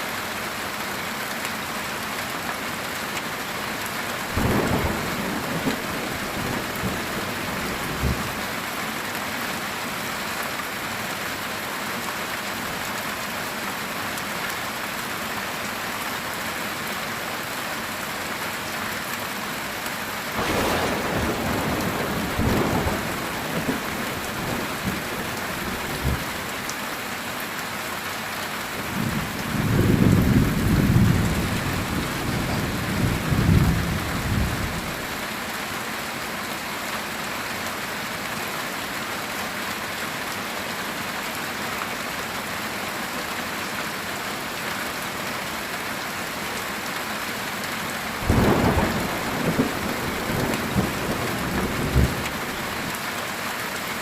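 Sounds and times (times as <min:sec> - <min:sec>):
heavy rain on a tin roof: 0:00.0 - 0:54.0
low thunder rumbles: 0:28.9 - 0:35.0, 0:48.2 - 0:52.7.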